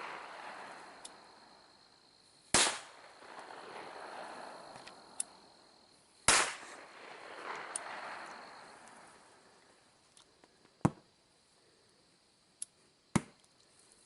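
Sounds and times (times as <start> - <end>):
firecracker bangs: 0.0 - 1.7, 2.5 - 5.2, 6.2 - 9.6.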